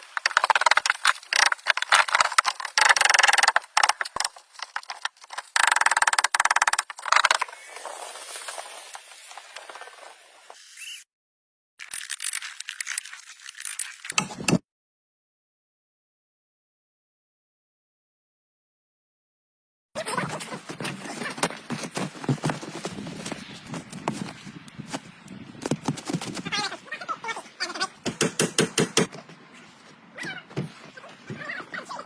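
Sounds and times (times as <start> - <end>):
continuous scraping: 20.0 - 28.0.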